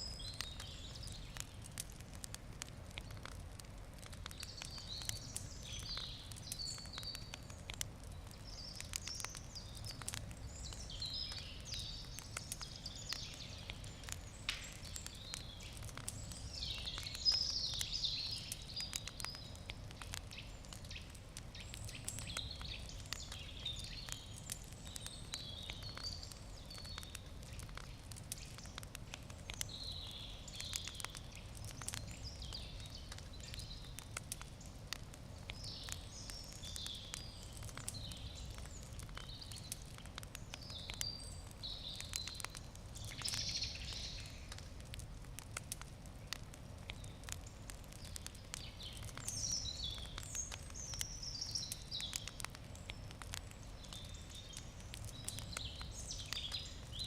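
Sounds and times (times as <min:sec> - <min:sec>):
campfire crackling and popping: 0:00.0 - 0:57.0
birds chirping: 0:04.2 - 0:34.7, 0:35.4 - 0:44.6, 0:46.9 - 0:57.0.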